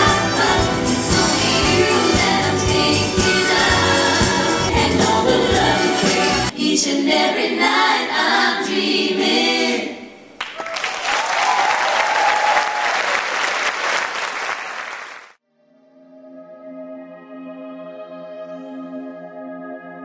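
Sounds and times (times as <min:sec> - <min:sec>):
choral singing over music: 0:00.0 - 0:10.3
audience applause: 0:10.4 - 0:15.4.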